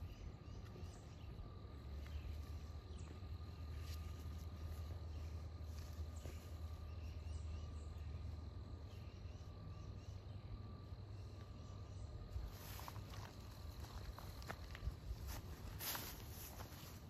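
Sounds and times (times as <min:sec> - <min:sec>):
faint bird chirps: 0:00.0 - 0:13.4.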